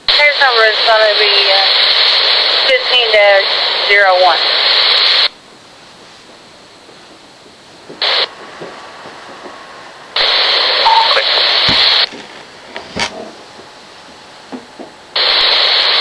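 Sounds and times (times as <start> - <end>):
radio static bursts: 0.1 - 5.3, 8.0 - 8.3, 10.2 - 12.1, 15.2 - 16.0
scanner hissing: 8.0 - 12.1, 15.1 - 16.0.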